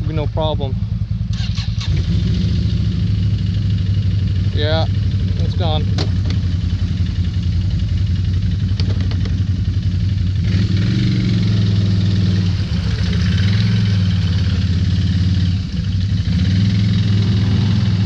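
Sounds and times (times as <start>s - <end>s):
atv engine running: 0.0s - 18.0s.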